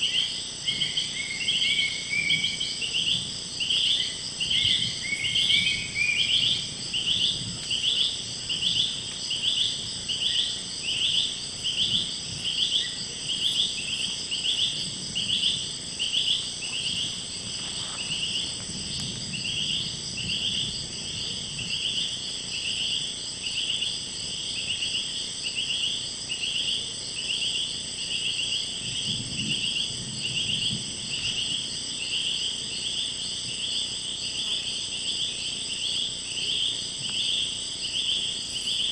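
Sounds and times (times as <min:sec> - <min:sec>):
high-pitched insect drones: 0:00.0 - 0:38.9
insect calling in steady pulse: 0:00.0 - 0:38.9.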